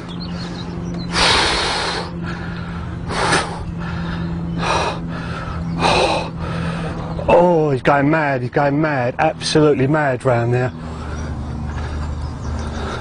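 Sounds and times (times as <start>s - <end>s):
man breathing hard: 0.0s - 7.2s, 10.8s - 13.0s
steady low hum: 0.0s - 13.0s.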